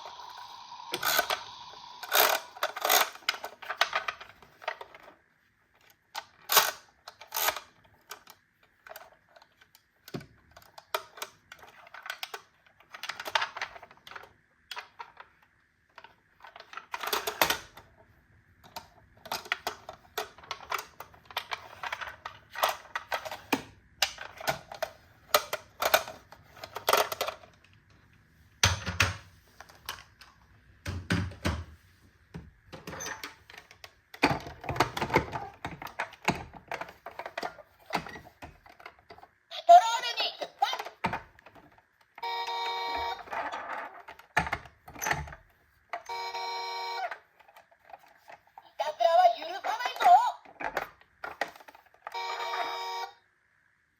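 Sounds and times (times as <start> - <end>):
toy vehicles clattering: 18.7 - 27.6, 47.0 - 52.8.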